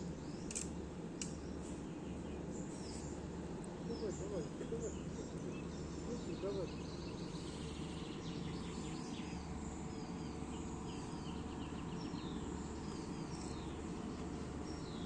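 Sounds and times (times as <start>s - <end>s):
small birds chirping: 0.0s - 15.0s
steady low background rush: 0.0s - 15.0s.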